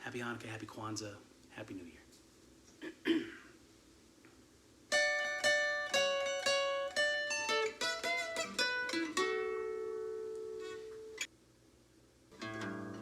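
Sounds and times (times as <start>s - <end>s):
plucked string instrument chords: 4.9s - 11.3s, 12.3s - 13.0s.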